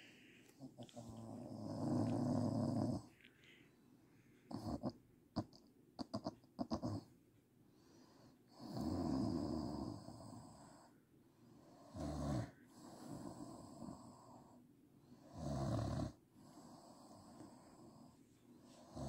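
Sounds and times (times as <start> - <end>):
woman snoring: 1.1 - 3.1, 8.6 - 10.6, 15.3 - 16.2.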